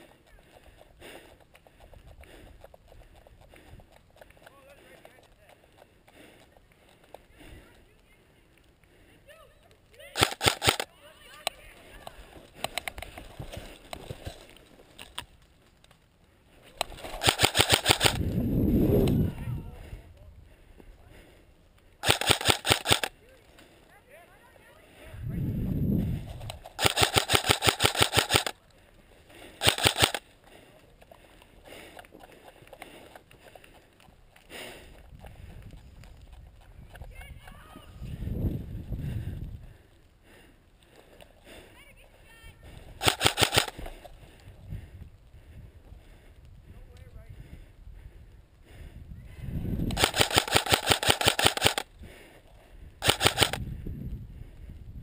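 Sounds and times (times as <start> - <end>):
airsoft rifle automatic fire: 10.2 - 10.9, 16.9 - 18.4, 22.0 - 23.1, 26.8 - 28.6, 29.6 - 30.2, 43.0 - 43.9, 49.9 - 51.9, 53.0 - 53.6.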